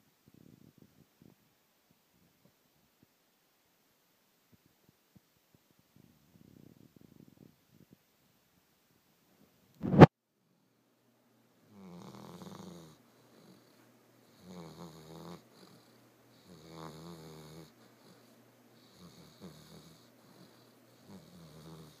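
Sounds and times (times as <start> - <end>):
snoring breaths: 11.7 - 22.0.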